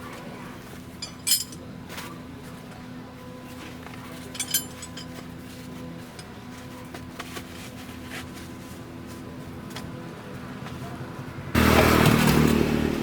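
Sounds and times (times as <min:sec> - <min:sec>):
sharp metallic clinks: 0:01.0 - 0:01.6, 0:04.4 - 0:05.1.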